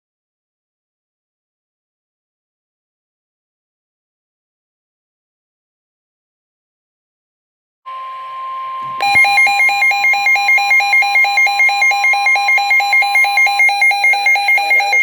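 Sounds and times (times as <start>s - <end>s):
steady high tone: 7.9s - 15.0s
warbling alarm tone: 7.9s - 15.0s.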